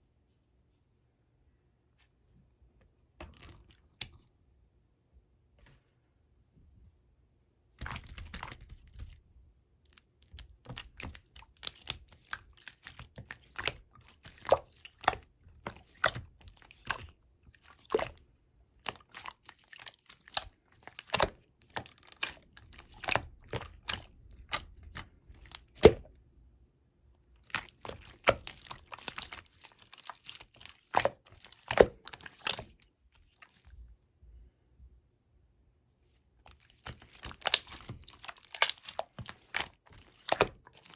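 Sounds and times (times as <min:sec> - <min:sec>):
crinkling handling sounds: 0:09.9 - 0:26.1, 0:27.4 - 0:33.8, 0:36.4 - 0:40.9.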